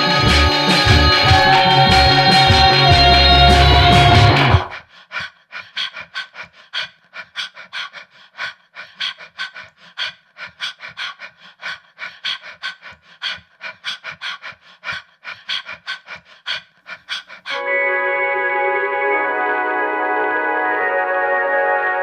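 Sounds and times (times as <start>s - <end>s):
background music: 0.0s - 4.7s, 17.6s - 22.0s
breathy percussive noise bursts: 0.0s - 4.9s.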